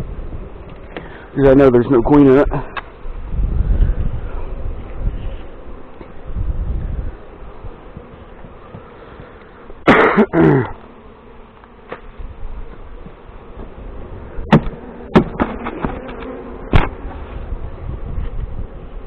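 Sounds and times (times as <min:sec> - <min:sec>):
bees buzzing: 0:00.0 - 0:19.0
sharp knocks: 0:14.5 - 0:16.0.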